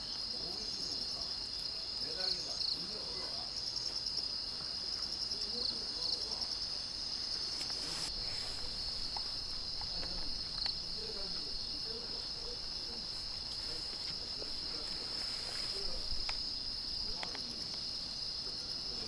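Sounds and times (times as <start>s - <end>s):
crickets chirping: 0.0s - 19.0s
soft rush of noise: 7.1s - 18.1s.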